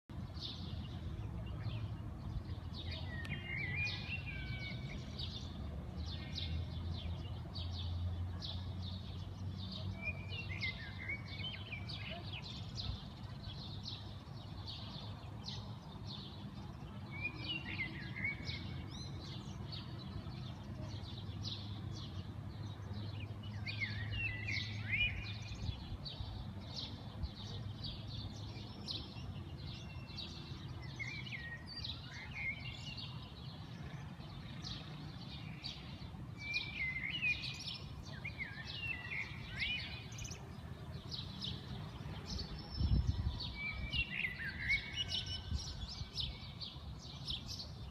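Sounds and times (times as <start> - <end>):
birds chirping and singing: 0.2 - 47.9.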